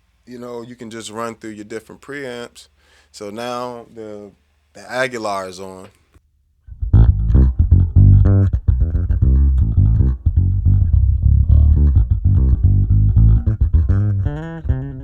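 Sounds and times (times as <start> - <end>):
electric bass guitar plucked notes: 6.7 - 15.0.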